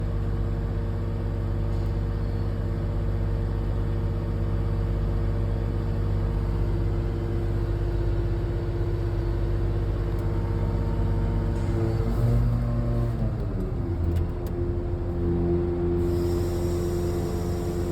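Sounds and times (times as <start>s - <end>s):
crane engine running: 5.0s - 17.9s.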